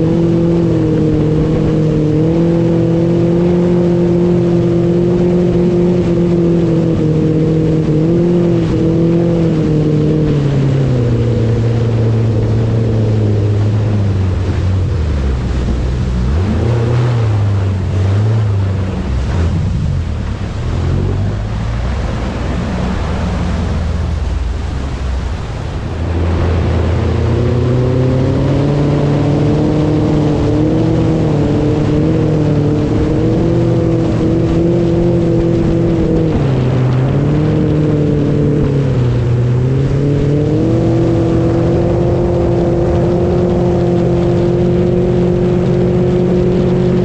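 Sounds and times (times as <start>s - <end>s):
engine running: 0.0s - 47.0s.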